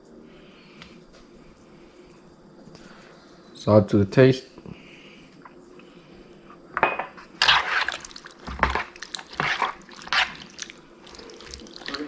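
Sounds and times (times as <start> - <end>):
wet squelching mixing strokes: 7.4 - 12.0.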